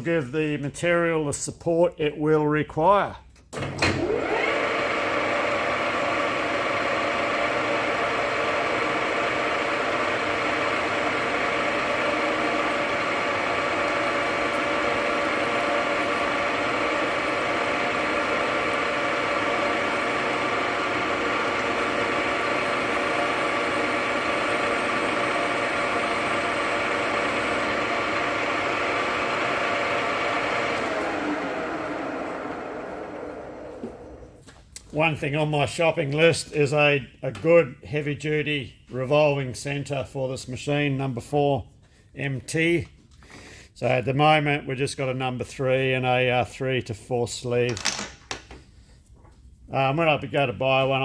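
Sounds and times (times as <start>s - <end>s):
metal lathe running: 4.0s - 34.2s.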